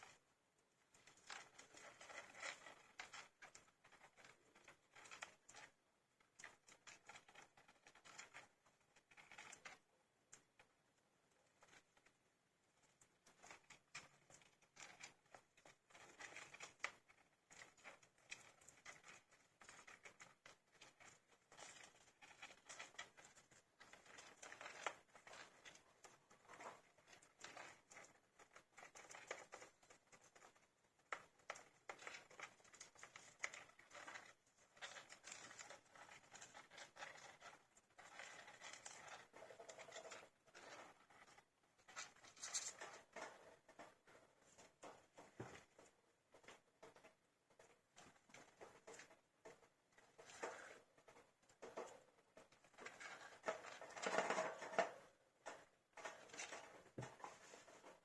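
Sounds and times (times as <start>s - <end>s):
hamster pups rustling in bedding: 12.8s - 58.0s.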